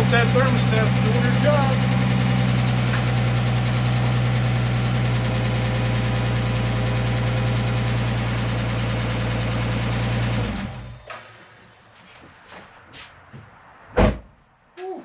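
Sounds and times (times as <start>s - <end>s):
car engine idling: 0.0s - 11.8s.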